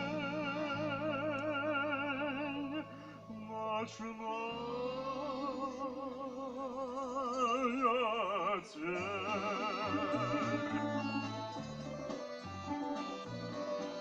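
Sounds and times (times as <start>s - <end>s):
person singing operatically: 0.0s - 14.0s
instrumental accompaniment: 8.8s - 14.0s.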